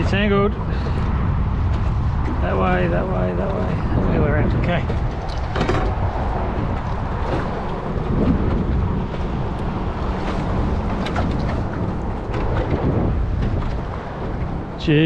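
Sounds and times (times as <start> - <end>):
outboard motor running: 0.0 - 15.0
wind buffeting microphone: 0.0 - 15.0.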